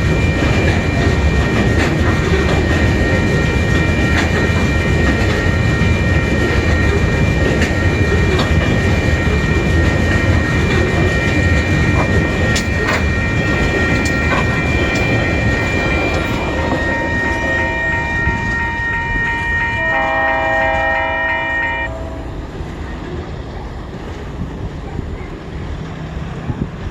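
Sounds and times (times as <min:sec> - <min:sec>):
freight train rumbling past: 0:00.0 - 0:26.9
high ringing tones: 0:02.5 - 0:22.5
lower pitched tones: 0:11.2 - 0:22.6.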